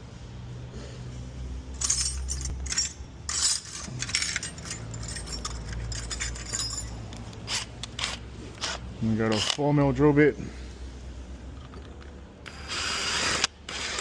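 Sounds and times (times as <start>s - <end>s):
low steady hum: 0.0s - 14.0s
metal tools clinking: 1.7s - 8.7s.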